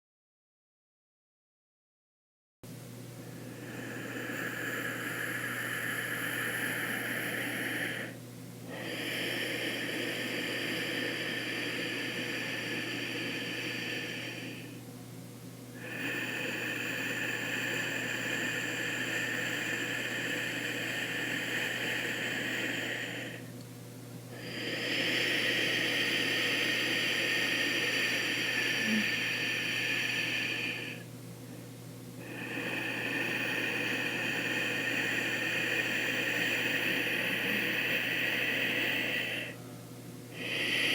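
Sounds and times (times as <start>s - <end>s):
low steady hum: 2.7s - 40.9s
hissing breaths through throat: 3.3s - 14.8s, 15.8s - 23.5s, 24.4s - 31.0s, 32.2s - 39.6s, 40.3s - 40.9s.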